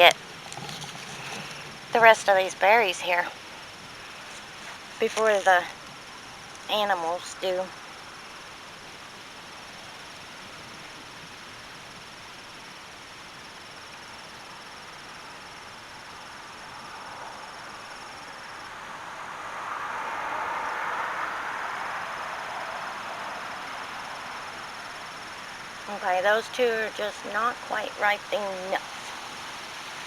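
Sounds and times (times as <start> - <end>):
outdoor rustling: 0.0 - 13.4, 23.8 - 30.0
insects trilling: 0.0 - 30.0.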